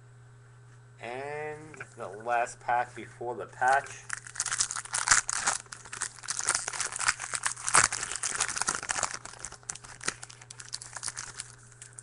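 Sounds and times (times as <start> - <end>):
wrapper tearing and crinkling: 3.9 - 12.0.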